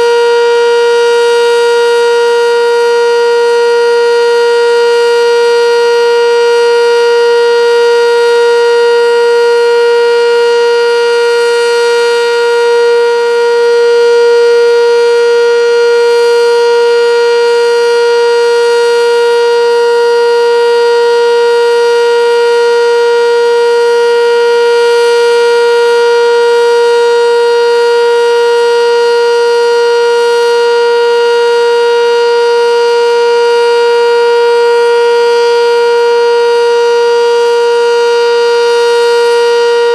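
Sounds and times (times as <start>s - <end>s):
steady warning siren tone: 0.0s - 39.9s.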